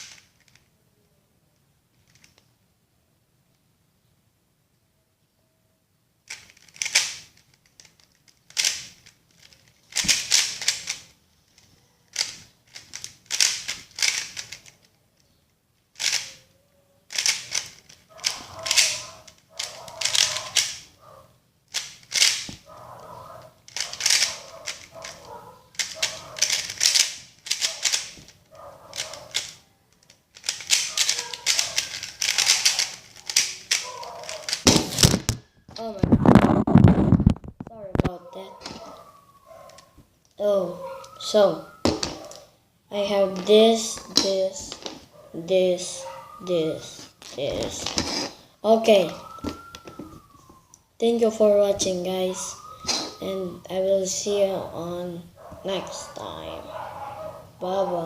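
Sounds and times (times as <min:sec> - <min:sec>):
puzzle cube plastic clicking: 0:00.0 - 0:00.6, 0:02.0 - 0:02.5, 0:06.3 - 0:15.3, 0:15.9 - 0:16.4, 0:17.1 - 0:20.9, 0:21.7 - 0:35.4.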